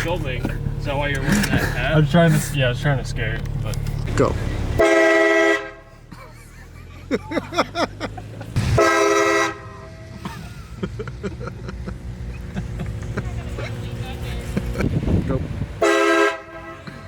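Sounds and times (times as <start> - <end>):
air horn blasts: 4.8 - 6.0, 8.6 - 10.2, 15.8 - 17.0.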